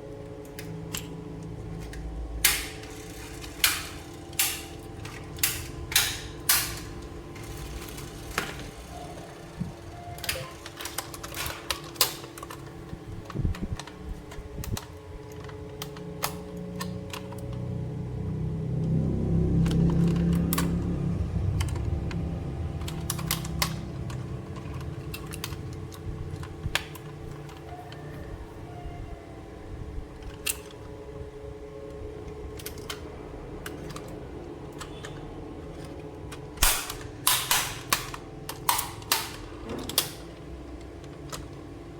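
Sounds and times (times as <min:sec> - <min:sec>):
plastic toy pieces clicking: 0:21.5 - 0:27.8
plastic pieces clicking and tapping: 0:21.5 - 0:28.0, 0:33.6 - 0:41.6.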